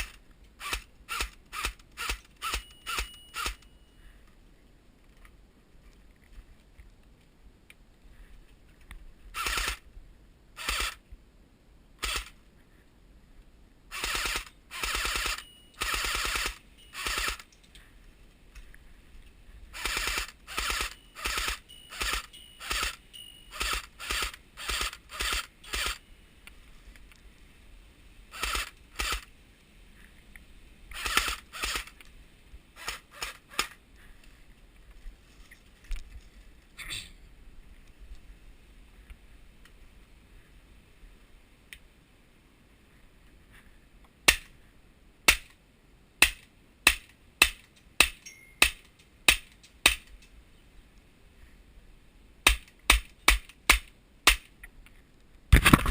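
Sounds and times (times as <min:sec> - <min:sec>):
airsoft rifle firing bursts: 0:13.9 - 0:17.5, 0:19.8 - 0:26.0, 0:31.0 - 0:31.9.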